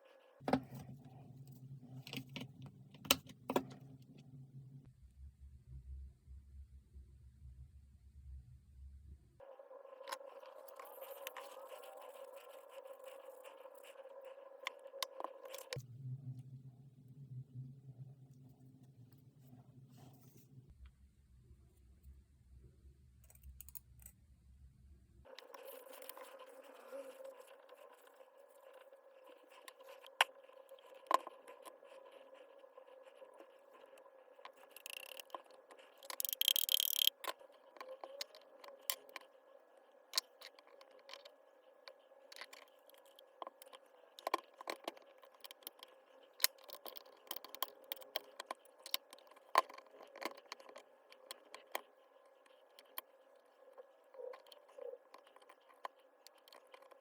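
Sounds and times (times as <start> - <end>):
faint steady hum: 0.0 - 57.0
clicks and scrapes of small parts: 10.0 - 15.8, 23.2 - 24.2, 25.3 - 57.0.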